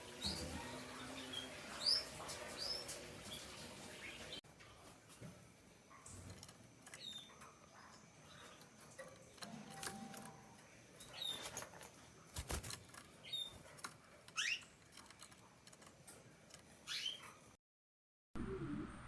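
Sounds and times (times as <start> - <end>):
canary chirping and whistling: 13.2 - 13.6, 14.4 - 14.7, 16.8 - 17.4.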